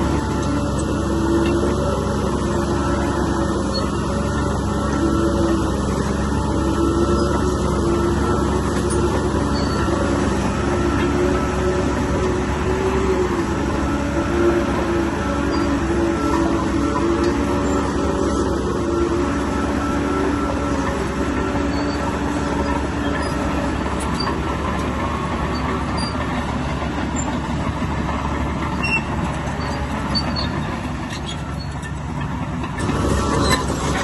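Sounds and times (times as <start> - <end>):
diesel engine running under load: 0.0 - 34.0
steel tracks clattering and squealing: 0.0 - 34.0.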